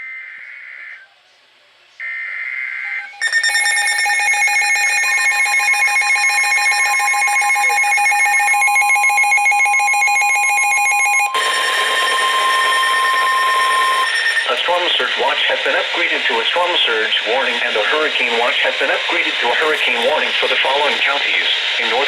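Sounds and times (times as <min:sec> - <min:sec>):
electronic attention tone: 0:03.0 - 0:14.9
buzzy data screech: 0:03.0 - 0:16.2.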